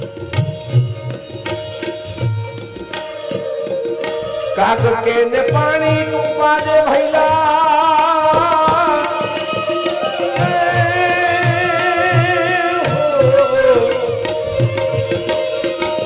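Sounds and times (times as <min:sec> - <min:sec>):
tabla beats: 0:00.0 - 0:16.0
man singing devotional song: 0:03.2 - 0:16.0.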